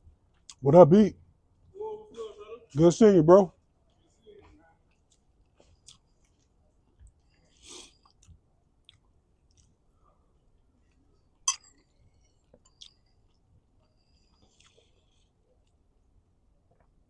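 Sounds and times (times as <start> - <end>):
faint clicks and taps: 3.6 - 7.4.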